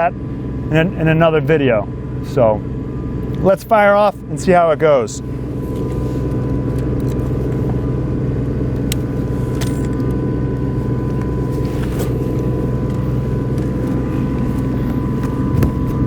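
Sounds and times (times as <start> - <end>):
welding machine engine humming: 5.2 - 16.0.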